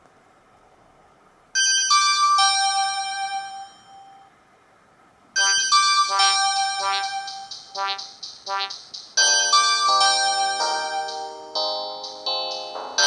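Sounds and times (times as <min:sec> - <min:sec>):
electronic phone ringtone: 0:05.4 - 0:13.0.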